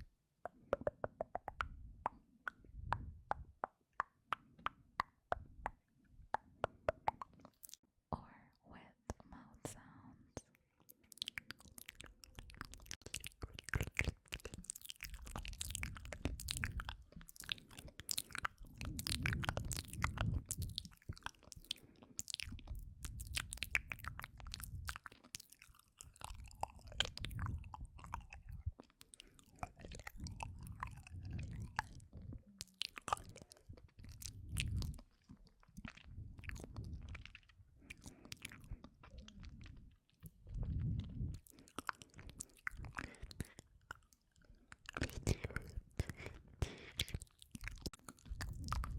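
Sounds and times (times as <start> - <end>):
lip and tongue clicks: 0.0 - 7.8, 10.4 - 48.9
dull low bumps: 0.8 - 3.6, 39.1 - 41.4.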